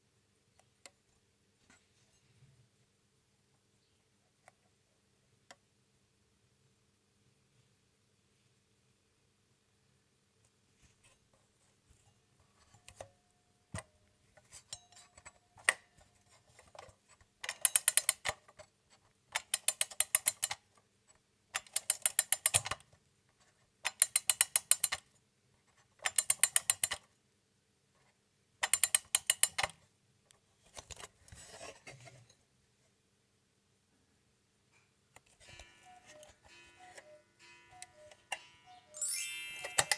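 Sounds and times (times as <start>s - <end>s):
alarm clock clicks: 17.5s - 18.2s, 35.4s - 39.9s
alarm clock bell ringing: 35.4s - 39.9s.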